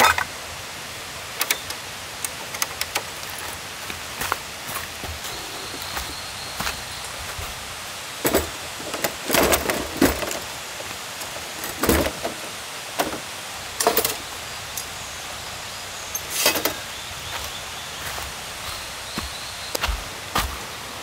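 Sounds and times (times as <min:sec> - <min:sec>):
insects droning: 0:00.0 - 0:21.0
rustling and clatter of handling: 0:02.3 - 0:07.6, 0:08.2 - 0:14.3, 0:16.2 - 0:16.8.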